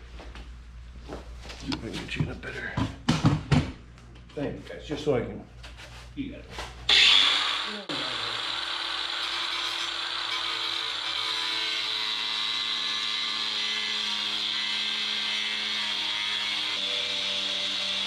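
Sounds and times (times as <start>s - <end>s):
cut-off wheel cutting plastic: 6.9s - 18.0s.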